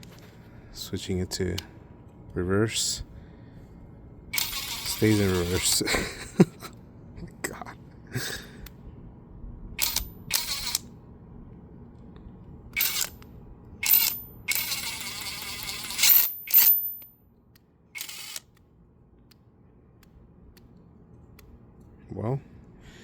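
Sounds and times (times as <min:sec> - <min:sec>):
cordless impact wrench bursts: 0:04.4 - 0:05.8, 0:09.8 - 0:10.8, 0:12.8 - 0:13.2, 0:13.8 - 0:17.0, 0:18.0 - 0:18.5.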